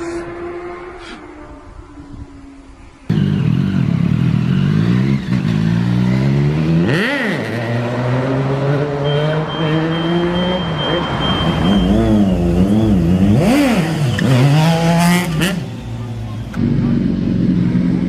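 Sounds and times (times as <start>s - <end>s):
motorcycle engine revving: 0.0s - 18.0s.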